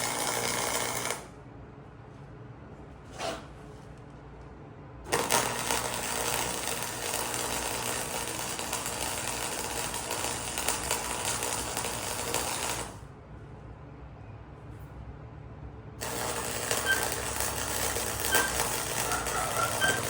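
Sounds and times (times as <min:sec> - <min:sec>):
welder arc crackling: 0:00.0 - 0:01.3, 0:05.1 - 0:13.0, 0:16.0 - 0:20.0.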